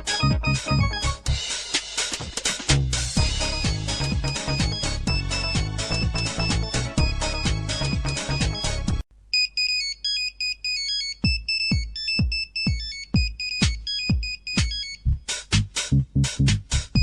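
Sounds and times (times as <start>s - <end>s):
busy electronic ringtone: 0.0s - 1.2s, 3.2s - 15.1s
high beeping ringtone melody: 0.0s - 1.2s, 3.2s - 15.1s
low thumping beat: 0.0s - 9.0s, 11.2s - 17.0s.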